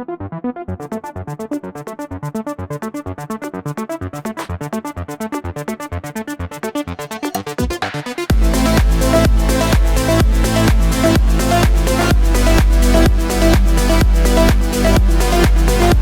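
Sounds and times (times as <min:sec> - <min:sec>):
electronic dance music: 0:06.5 - 0:16.0.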